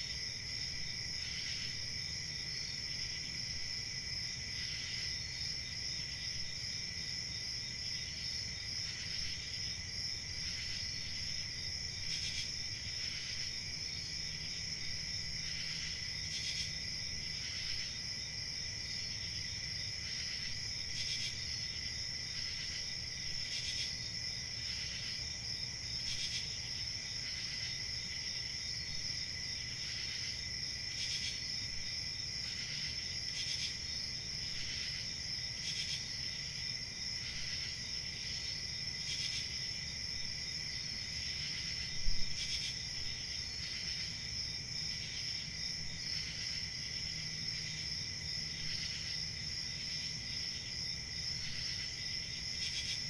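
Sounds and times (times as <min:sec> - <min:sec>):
crickets chirping: 0:00.0 - 0:53.0.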